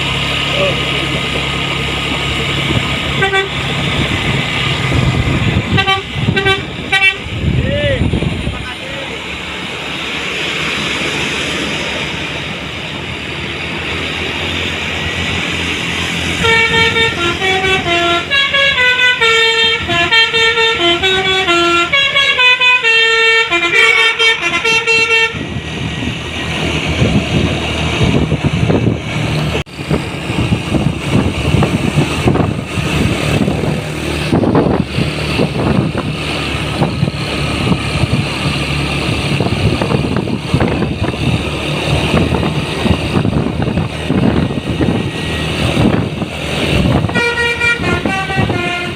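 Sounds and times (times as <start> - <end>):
bus engine: 0.0 - 48.9
heavy vehicles passing: 0.0 - 48.9
bus air horn melody: 3.1 - 3.7, 5.6 - 7.4, 16.3 - 25.6, 47.0 - 48.9.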